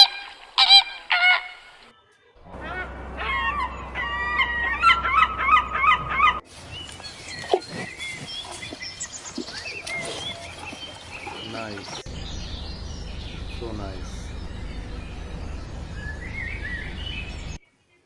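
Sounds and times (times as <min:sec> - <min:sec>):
farm waterfowl honking: 0:00.0 - 0:01.8, 0:02.4 - 0:06.4, 0:12.0 - 0:17.6.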